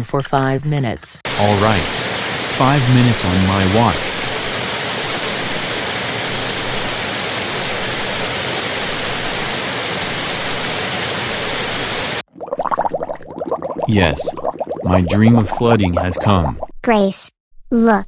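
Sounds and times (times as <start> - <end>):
flood water rushing: 1.3 - 12.2, 13.9 - 16.5.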